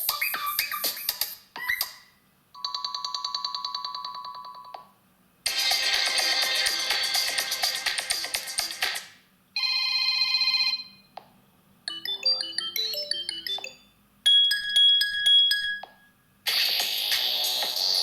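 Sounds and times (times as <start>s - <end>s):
phone ringtones: 2.6s - 4.8s, 9.6s - 11.1s, 11.9s - 16.0s
quick melodic notes: 11.9s - 13.8s
steady beeping tone: 11.9s - 15.9s
bright chiming tone with ticks: 11.9s - 16.0s.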